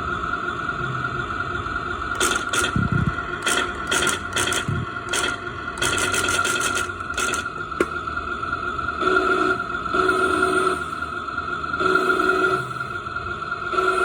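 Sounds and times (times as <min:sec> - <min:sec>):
electronic gunfire effects: 0:02.2 - 0:07.6.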